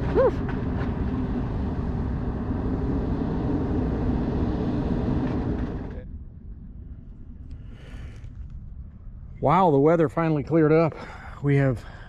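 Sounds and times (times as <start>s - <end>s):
motorhome engine running: 0.0s - 8.3s
quiet outdoor background: 0.0s - 12.0s.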